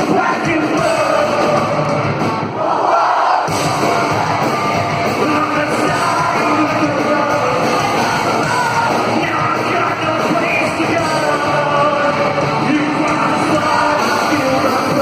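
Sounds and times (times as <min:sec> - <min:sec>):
live rock band: 0:00.0 - 0:15.0
person singing and yelling: 0:03.6 - 0:15.0.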